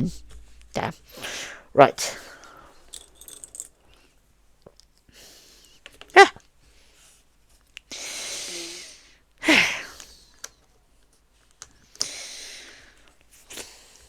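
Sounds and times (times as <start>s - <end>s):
breathy exhalations: 1.1s - 3.5s.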